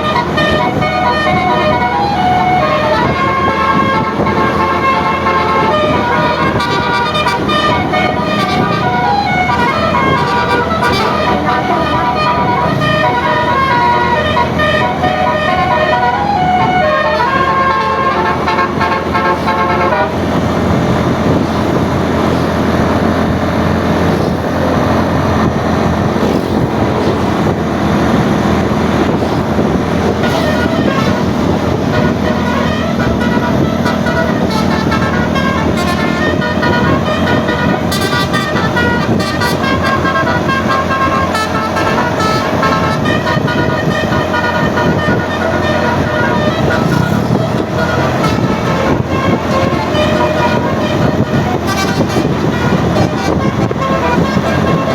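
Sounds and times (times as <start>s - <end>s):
engine and road noise: 0.0s - 54.9s
multi-tone bus horn tune: 0.0s - 54.9s.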